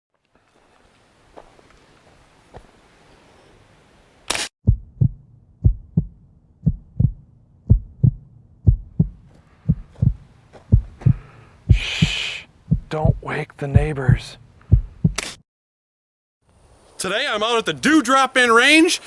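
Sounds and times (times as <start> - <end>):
heartbeat thumps: 4.6 - 15.3.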